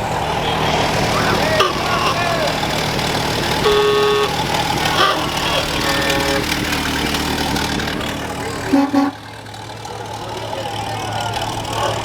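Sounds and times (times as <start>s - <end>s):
vehicle engines idling: 0.0s - 12.0s
vehicle horn honking: 0.1s - 9.6s.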